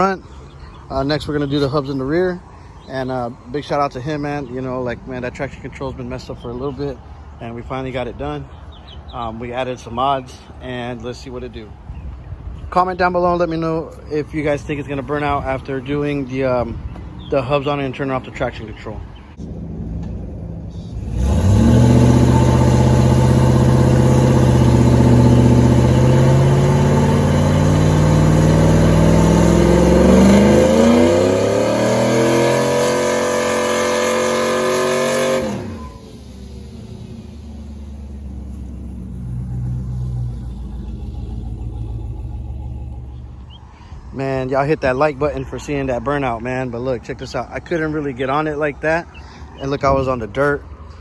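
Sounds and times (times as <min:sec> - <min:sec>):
car engine revving: 0:19.4 - 0:43.9.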